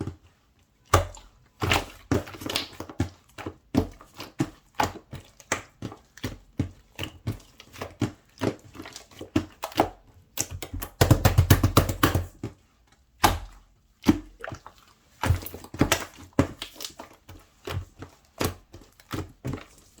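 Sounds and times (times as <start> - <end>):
slime squished by hand: 13.2 - 20.0.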